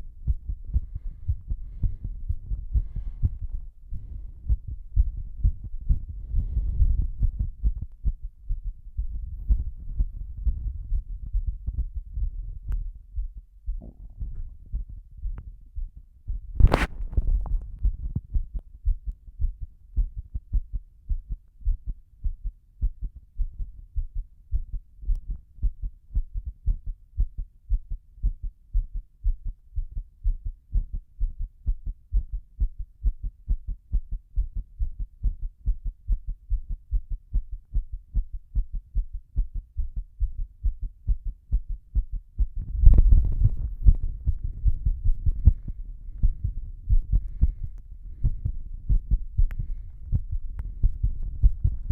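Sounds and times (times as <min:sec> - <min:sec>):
heartbeat thumps: 0:00.0 - 0:51.9
brief knock: 0:13.8 - 0:14.3.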